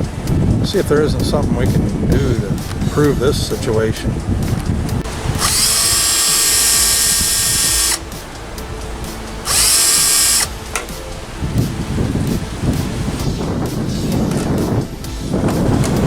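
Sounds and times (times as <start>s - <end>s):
power drill whining: 5.0s - 11.0s.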